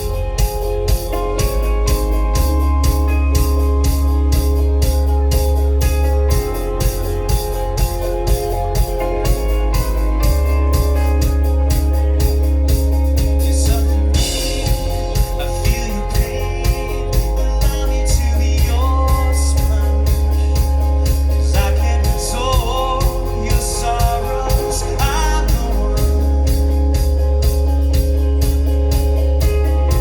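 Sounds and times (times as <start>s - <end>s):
drum beat: 0.0s - 30.0s
rock band playing live: 0.0s - 30.0s
person singing: 13.2s - 27.0s.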